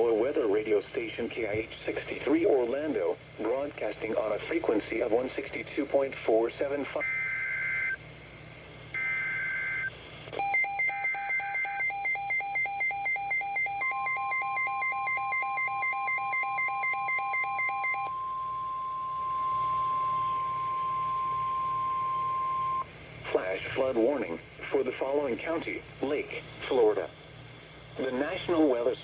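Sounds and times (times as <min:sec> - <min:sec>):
rapidly pulsing alarm beep: 0:09.0 - 0:22.9
steady warning tone: 0:09.0 - 0:22.9
warbling data bursts: 0:10.4 - 0:22.9.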